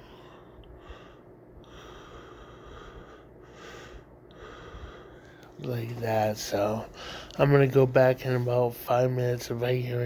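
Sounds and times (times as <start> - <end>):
man breathing heavily in sleep: 0.0 - 5.6, 6.7 - 7.4.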